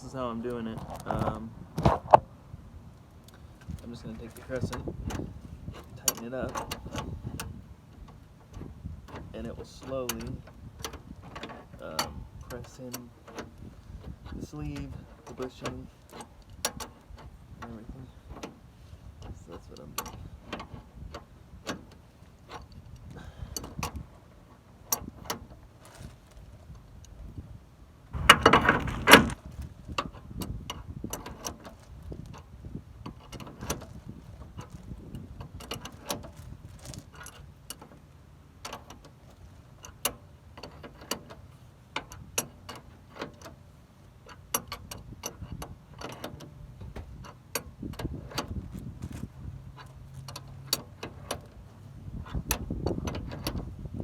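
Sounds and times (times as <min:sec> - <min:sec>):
wrench clicking on bolt: 0:44.3 - 0:48.6.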